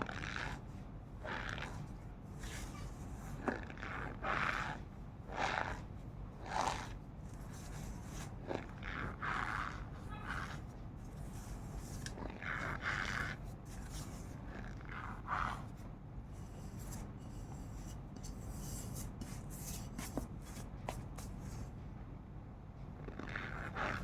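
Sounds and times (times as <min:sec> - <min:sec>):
cornstarch squeaky scrunches: 0:02.4 - 0:10.7, 0:11.4 - 0:15.7.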